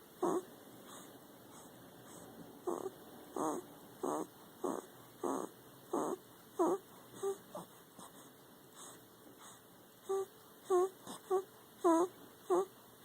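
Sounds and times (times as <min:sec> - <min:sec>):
dog whimpering and huffing: 0:00.2 - 0:07.7, 0:10.1 - 0:12.7
dog high whines: 0:02.7 - 0:07.6.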